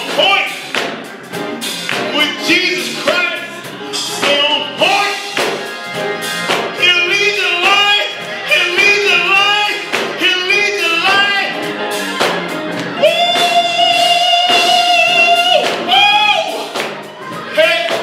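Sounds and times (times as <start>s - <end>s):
instrumental backing: 0.0s - 18.0s
person singing: 6.8s - 18.0s.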